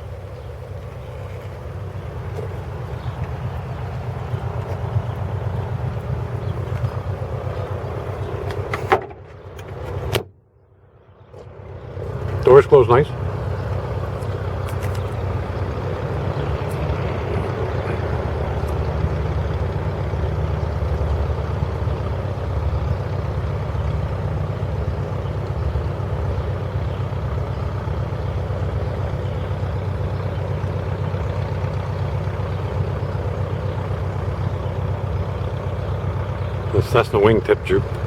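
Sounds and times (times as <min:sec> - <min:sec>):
low pulsing rumble: 0:00.0 - 0:38.0
faint light clicks: 0:13.7 - 0:15.2.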